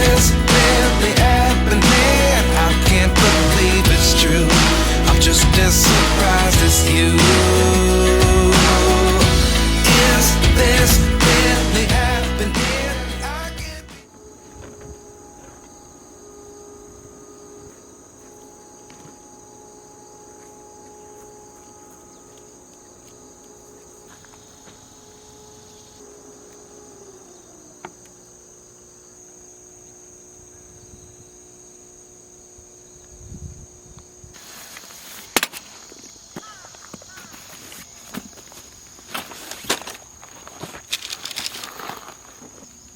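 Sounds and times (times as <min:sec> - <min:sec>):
crickets chirring: 0:00.0 - 0:42.9
rustling: 0:34.4 - 0:42.8.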